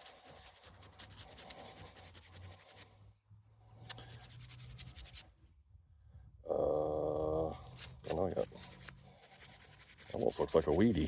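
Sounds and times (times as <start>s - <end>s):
toothbrush scrubbing coin: 0.0s - 2.9s, 3.9s - 5.3s, 7.7s - 11.0s.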